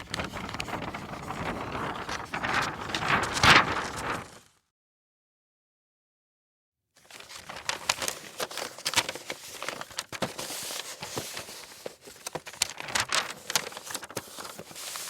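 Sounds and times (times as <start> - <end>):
paper being crumpled: 0.0 - 4.6, 7.0 - 15.0.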